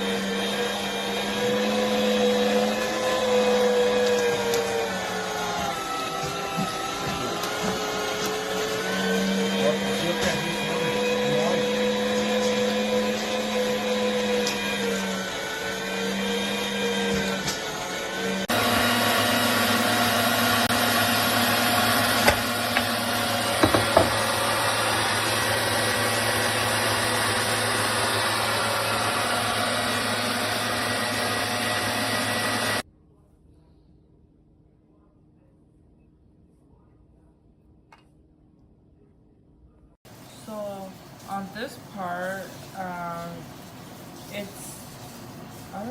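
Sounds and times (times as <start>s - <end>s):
electric meat grinder motor humming: 0.0s - 32.8s.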